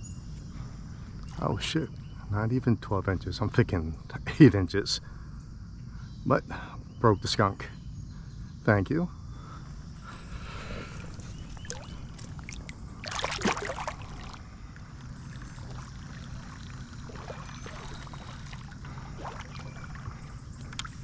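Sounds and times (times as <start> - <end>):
creek water rushing: 10.9 - 20.3
loud water splash: 11.7 - 14.4.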